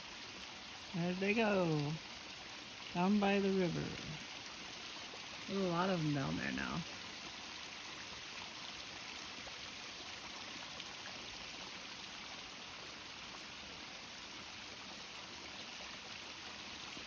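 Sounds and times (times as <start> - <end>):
running water: 0.0 - 17.0.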